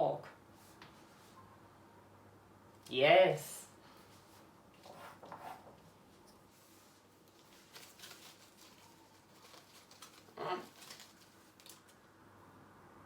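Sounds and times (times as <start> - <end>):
hand rummaging in a bag: 7.2 - 11.9.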